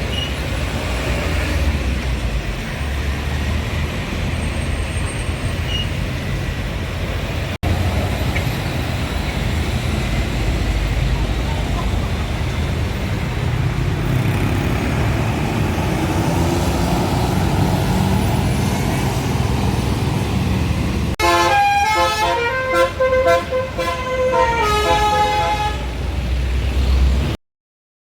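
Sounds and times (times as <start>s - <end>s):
heavy vehicle rumble: 0.0s - 27.4s
multi-tone bus air horn tune: 21.2s - 26.0s.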